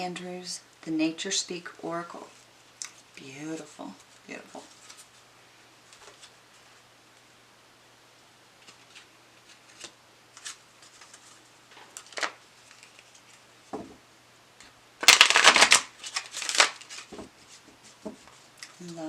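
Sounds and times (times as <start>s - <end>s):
cards being shuffled: 3.6s - 5.2s, 5.9s - 6.7s, 8.6s - 13.5s, 15.0s - 19.0s
cards flicking and rustling: 8.6s - 13.5s, 15.0s - 17.3s.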